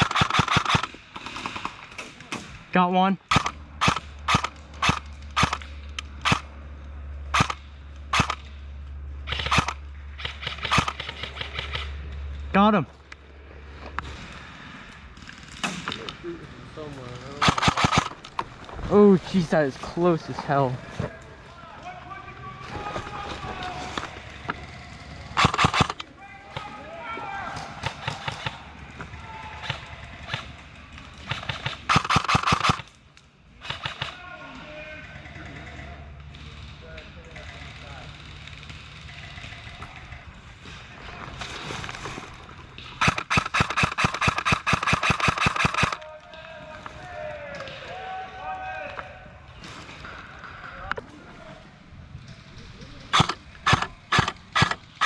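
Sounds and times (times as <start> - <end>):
airsoft gun shots: 0.0 - 2.6, 3.3 - 6.5, 7.3 - 8.4, 9.3 - 11.9, 17.4 - 18.2, 25.4 - 26.0, 31.3 - 32.9, 43.0 - 46.0, 53.1 - 55.0.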